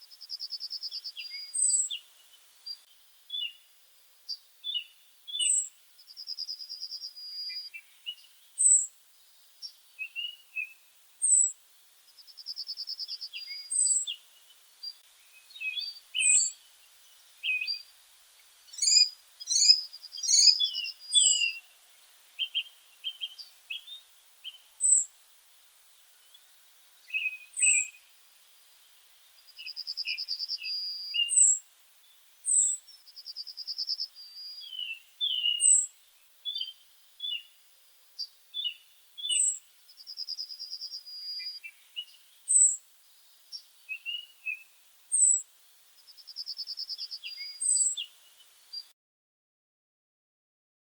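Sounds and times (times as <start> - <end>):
songbirds singing: 0.0 - 48.9
bird trills: 18.7 - 21.6.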